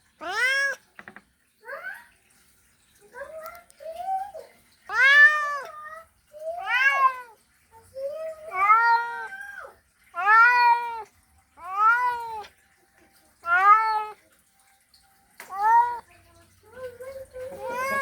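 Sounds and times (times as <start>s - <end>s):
cat meowing: 0.2s - 0.9s, 4.9s - 5.8s, 6.5s - 7.4s, 8.5s - 12.5s, 13.4s - 14.2s.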